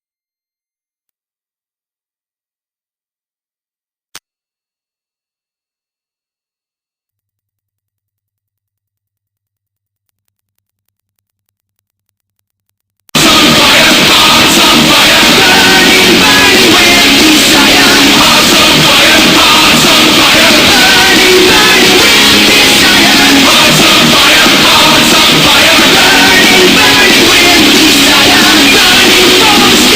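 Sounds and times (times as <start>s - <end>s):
loud rock music with vocals: 13.2s - 29.9s.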